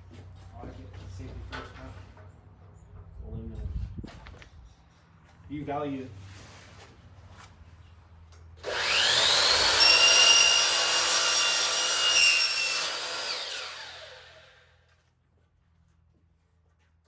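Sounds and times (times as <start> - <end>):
electric power saw cutting: 8.6 - 14.7.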